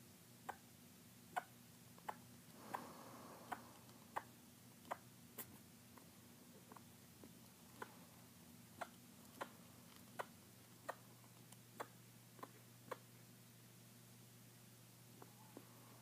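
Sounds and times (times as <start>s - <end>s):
pet making sharp clicking noises: 1.3s - 2.9s, 3.5s - 8.0s, 8.7s - 13.1s.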